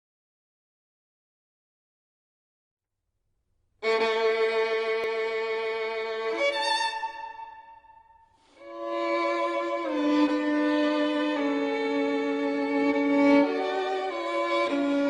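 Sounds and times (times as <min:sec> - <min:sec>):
bowed string instrument: 0:03.8 - 0:15.0.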